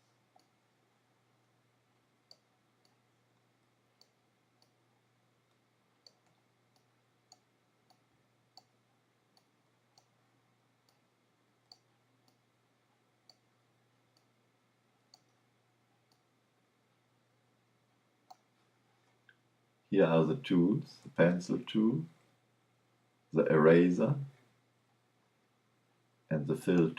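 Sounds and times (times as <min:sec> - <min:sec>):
computer mouse clicks: 0:00.0 - 0:00.6, 0:02.3 - 0:03.1, 0:04.0 - 0:04.8, 0:05.5 - 0:10.2, 0:11.7 - 0:12.4, 0:15.1 - 0:15.4, 0:16.0 - 0:16.3, 0:18.3 - 0:18.5.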